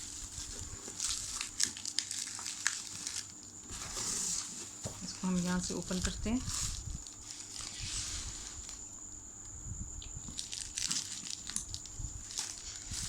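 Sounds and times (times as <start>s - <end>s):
packaging rustling and crinkling: 0.0s - 8.9s, 10.1s - 13.0s.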